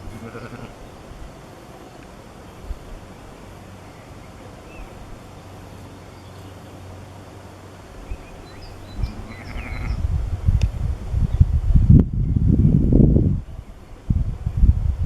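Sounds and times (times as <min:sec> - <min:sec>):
wind rumble on microphone: 0:08.0 - 0:15.0.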